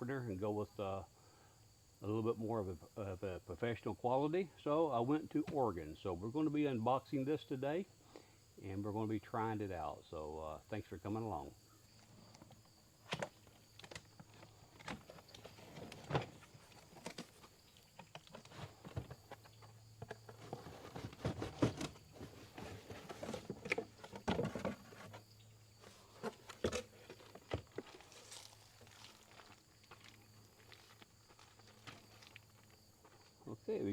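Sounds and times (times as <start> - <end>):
packing rustling and scraping: 12.0 - 32.6
cardboard box being opened: 20.3 - 25.2.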